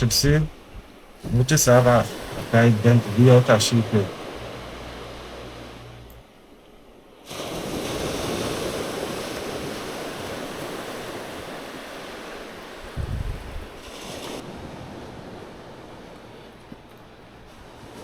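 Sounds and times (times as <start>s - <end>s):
surf washing on shore: 0.0s - 18.0s
wind buffeting microphone: 12.8s - 16.0s.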